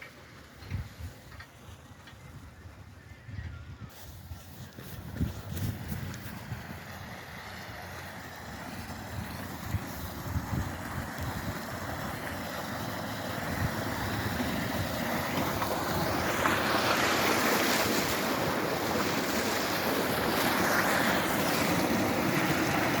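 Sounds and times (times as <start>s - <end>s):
wind: 0.0s - 23.0s
waves rushing: 4.7s - 23.0s.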